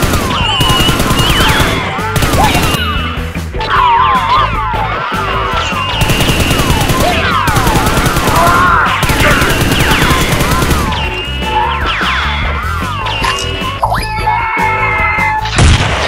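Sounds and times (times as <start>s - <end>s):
rapid gunfire effects: 0.0s - 2.9s, 5.8s - 11.4s.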